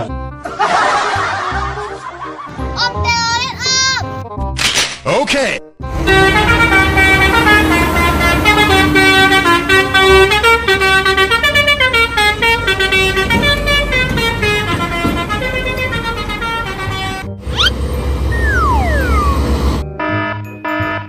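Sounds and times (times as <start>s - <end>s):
bus musical horn tune: 5.8s - 21.0s
low engine rumble: 5.9s - 19.9s.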